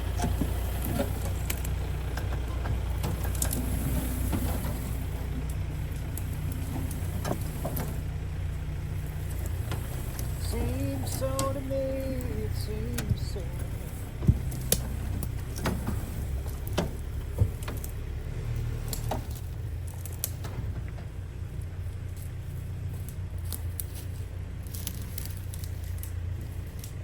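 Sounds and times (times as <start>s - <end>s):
excavator diesel engine droning: 0.0s - 27.0s
sharp cracks and clicks: 14.4s - 15.8s, 16.5s - 18.0s, 18.8s - 21.0s, 23.1s - 24.0s, 24.6s - 27.0s.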